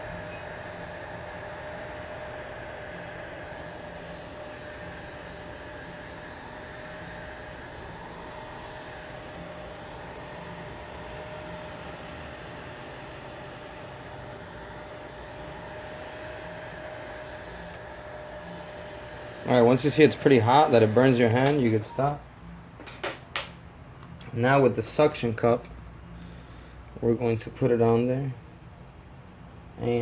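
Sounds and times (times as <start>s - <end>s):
hot-air blower running: 0.0s - 23.5s.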